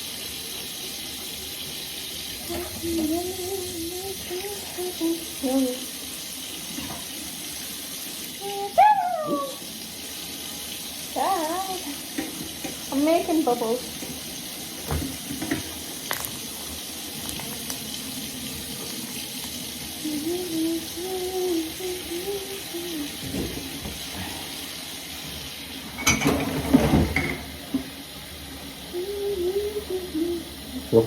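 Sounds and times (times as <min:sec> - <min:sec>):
tap running into sink: 0:06.7 - 0:07.2, 0:12.1 - 0:13.0, 0:13.9 - 0:16.4, 0:23.2 - 0:24.1, 0:25.9 - 0:28.0.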